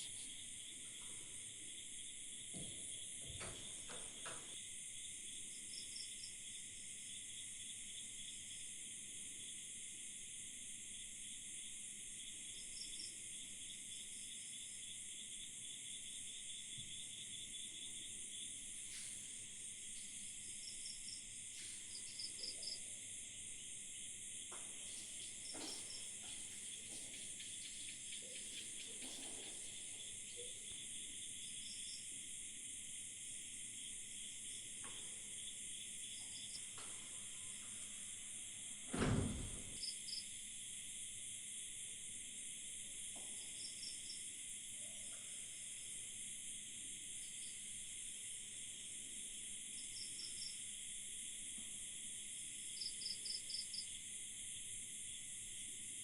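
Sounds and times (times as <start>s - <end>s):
crickets and insects trilling: 0.0s - 56.0s.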